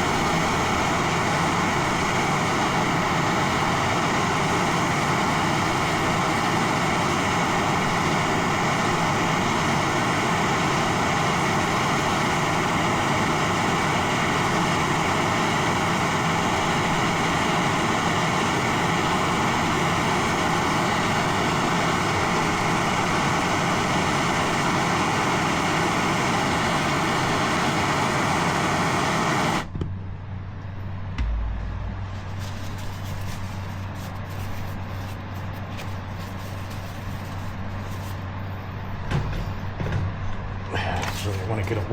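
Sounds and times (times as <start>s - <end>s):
gas torch hissing: 0.0s - 29.7s
low hum: 29.7s - 34.0s
dull thump: 31.2s - 32.7s.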